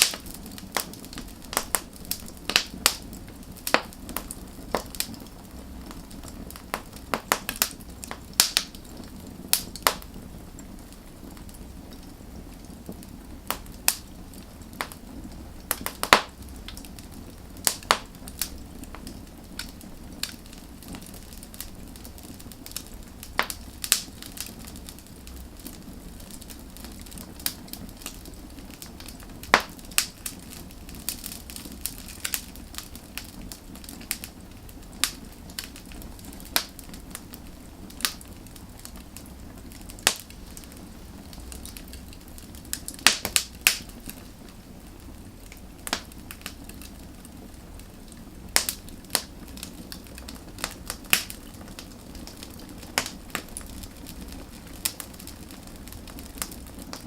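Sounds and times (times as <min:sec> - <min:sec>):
low rumble of flames: 0:00.0 - 0:57.0
wood crackling and popping: 0:00.0 - 0:57.0.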